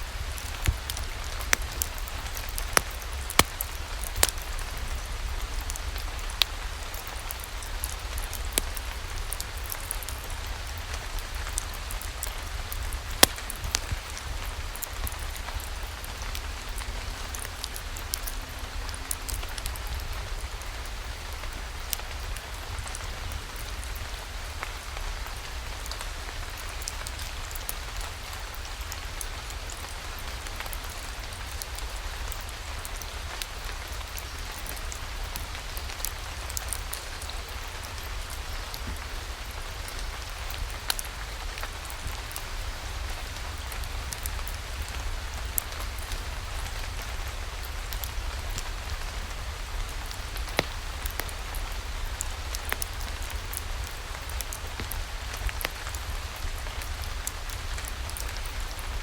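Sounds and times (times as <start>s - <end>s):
steady rain hiss: 0.0s - 59.0s
sharp raindrop ticks: 0.1s - 58.6s.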